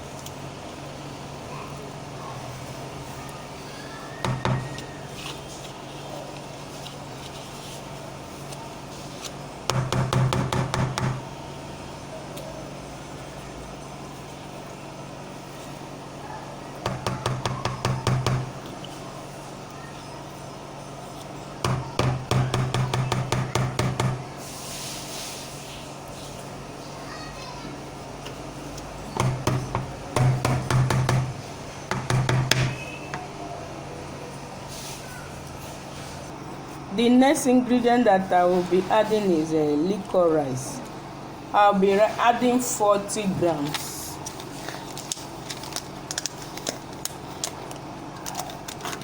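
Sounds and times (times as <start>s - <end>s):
rapid knocking: 4.2s - 4.8s, 9.7s - 11.4s, 16.8s - 18.7s, 21.6s - 24.3s, 29.1s - 33.3s
steady low hum: 27.7s - 34.8s.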